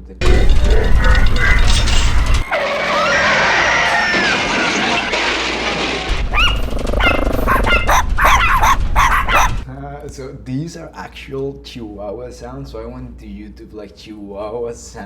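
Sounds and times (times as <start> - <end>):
small dogs yelping and barking: 6.1 - 9.6.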